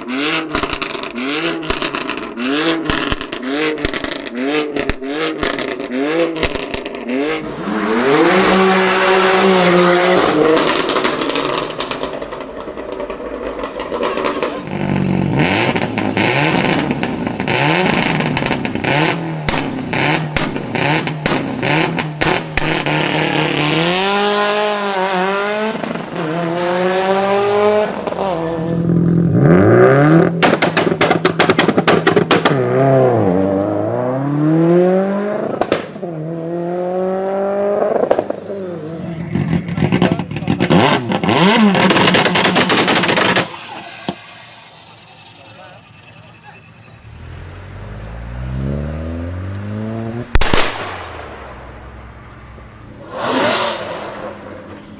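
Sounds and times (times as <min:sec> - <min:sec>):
exhaust pops and crackles: 0:00.0 - 0:07.1, 0:10.2 - 0:23.8, 0:30.2 - 0:32.8, 0:35.4 - 0:36.0, 0:37.9 - 0:38.4, 0:39.2 - 0:44.2, 0:50.0 - 0:54.9
car engine revving: 0:00.0 - 0:54.9.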